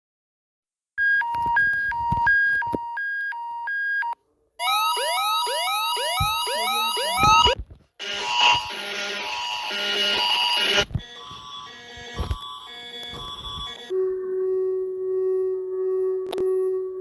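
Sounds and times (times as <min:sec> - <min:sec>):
two-tone alert signal: 0:04.6 - 0:07.6
noisy alarm sound: 0:04.6 - 0:17.0.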